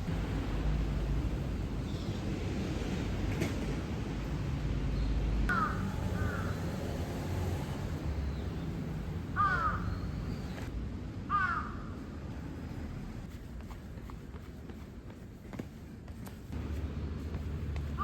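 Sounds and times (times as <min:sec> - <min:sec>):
crow cawing: 0:05.5 - 0:06.6, 0:09.4 - 0:10.0, 0:11.3 - 0:11.9.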